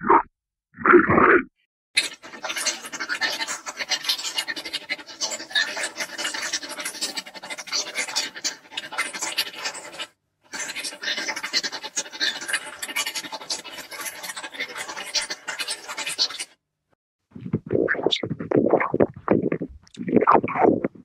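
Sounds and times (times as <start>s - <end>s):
rapid scratchy clicks and crackles: 17.4s - 21.0s.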